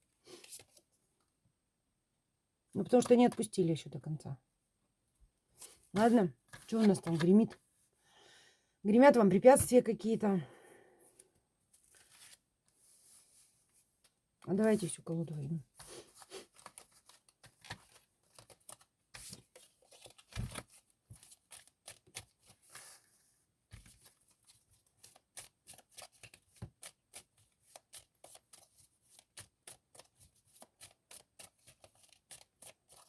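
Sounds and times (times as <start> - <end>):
cards being shuffled: 5.6 - 7.6.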